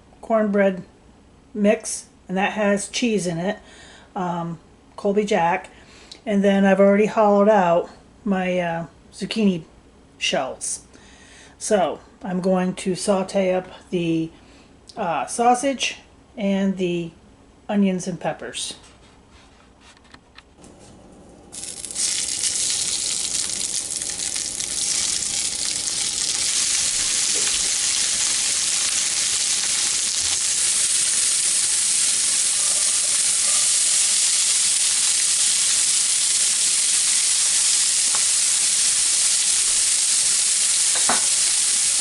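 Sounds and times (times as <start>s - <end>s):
sausage sizzling in a pan: 21.5s - 42.0s.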